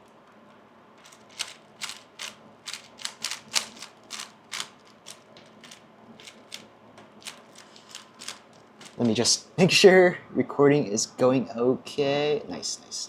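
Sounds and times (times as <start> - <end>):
plastic puzzle cube clicking: 1.0 - 6.6.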